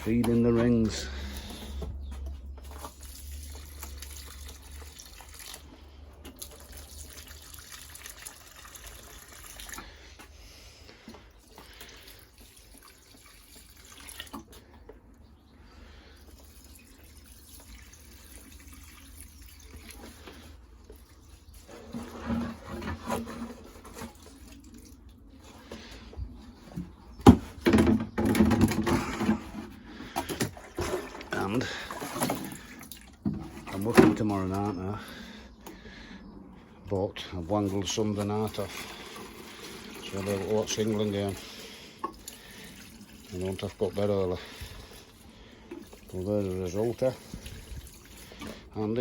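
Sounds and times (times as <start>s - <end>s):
water trickling and splashing: 0.0s - 27.1s, 27.8s - 49.0s.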